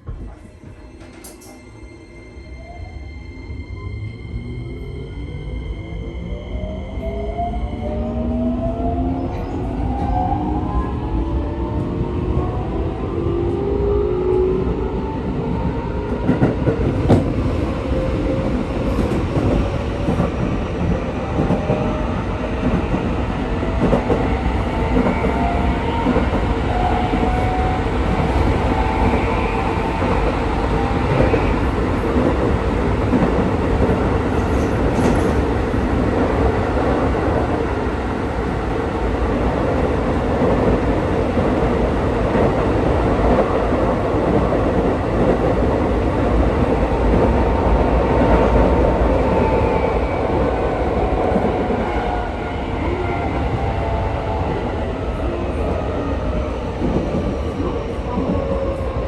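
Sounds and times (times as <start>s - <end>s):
rail joint clicks: 0.0s - 1.8s, 32.1s - 35.6s.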